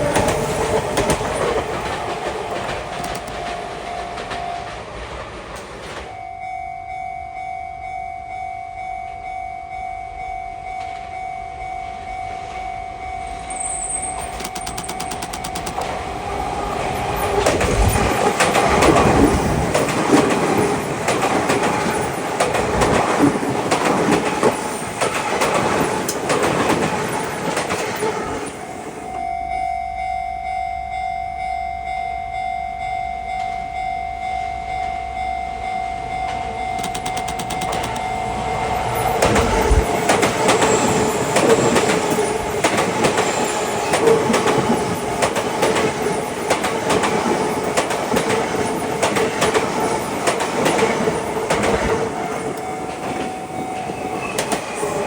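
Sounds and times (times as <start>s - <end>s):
train wheels clicking over rail joints: 0.0s - 6.2s, 13.5s - 29.2s, 36.1s - 55.0s
passing train: 0.0s - 55.0s
level crossing bell ringing: 6.2s - 16.2s, 29.1s - 46.6s, 51.0s - 54.3s.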